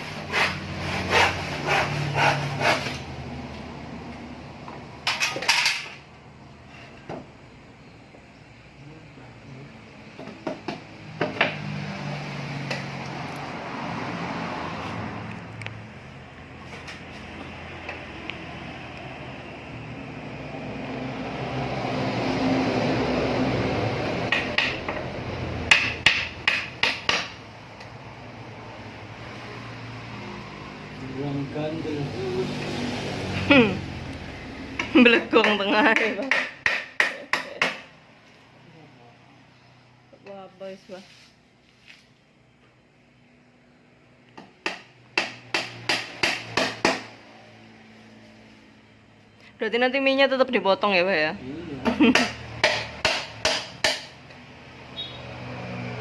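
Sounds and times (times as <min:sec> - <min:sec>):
hammer striking metal: 0:25.7 - 0:27.4, 0:52.1 - 0:54.2.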